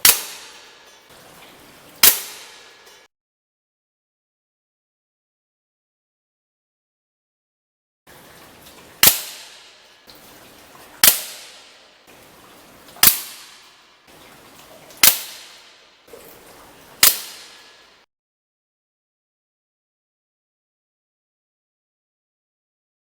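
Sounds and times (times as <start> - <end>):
air rifle shots: 0.0 - 0.8, 2.0 - 2.8, 9.0 - 9.7, 11.0 - 11.8, 15.0 - 15.7.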